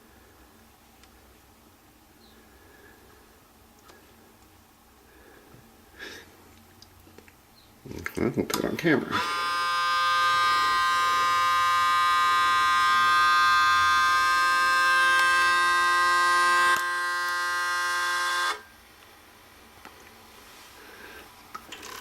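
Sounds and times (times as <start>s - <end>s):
audio feedback howl: 9.1s - 18.8s.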